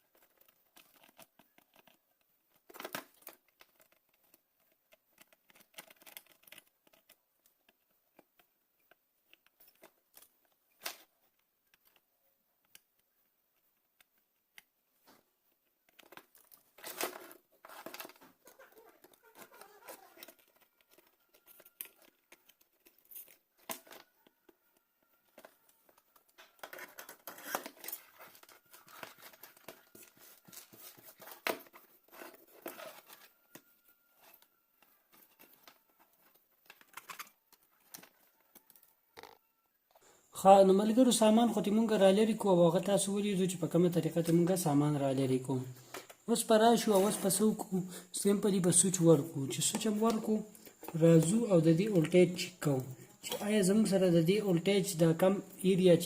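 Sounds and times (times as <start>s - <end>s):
hand tools clicking and scraping: 15.9s - 39.3s.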